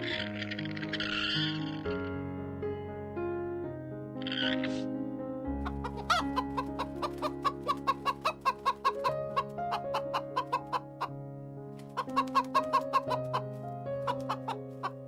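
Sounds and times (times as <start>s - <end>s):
background music: 0.0s - 15.0s
chicken call: 5.6s - 11.1s, 12.0s - 15.0s
chicken clucking: 5.6s - 11.1s, 11.8s - 15.0s.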